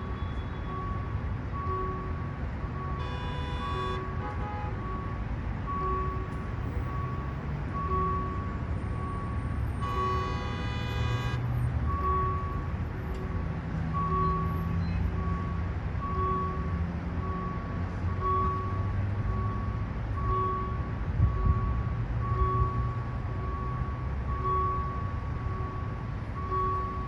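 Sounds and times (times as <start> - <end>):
two-tone electronic beep: 14.0 - 16.7.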